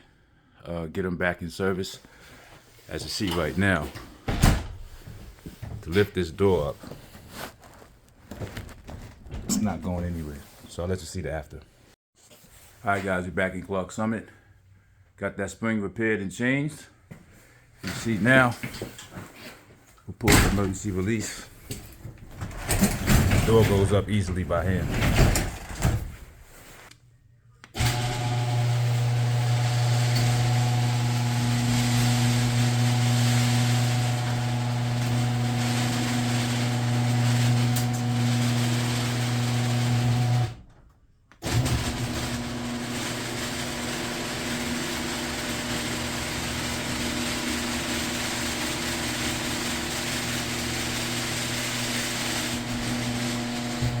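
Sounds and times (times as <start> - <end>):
garage door opener motor humming: 27.8 - 40.6, 41.4 - 54.0.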